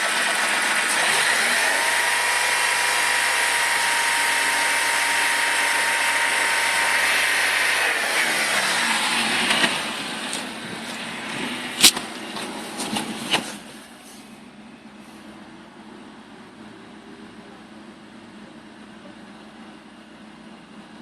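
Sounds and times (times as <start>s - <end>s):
engine spinning down: 0.0s - 13.8s
car engine running with a rattle: 0.0s - 21.0s.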